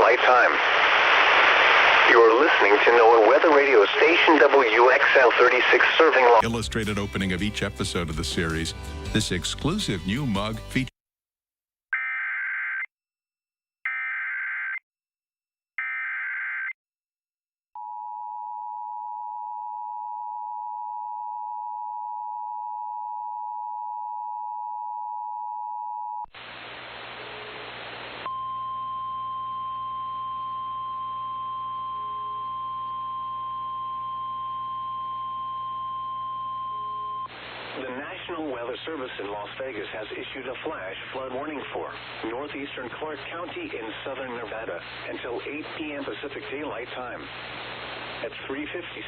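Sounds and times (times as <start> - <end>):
faint static: 0.0 - 6.4, 26.3 - 28.5, 33.8 - 49.0
radio hiss: 0.0 - 6.5, 26.4 - 28.3, 37.3 - 49.0.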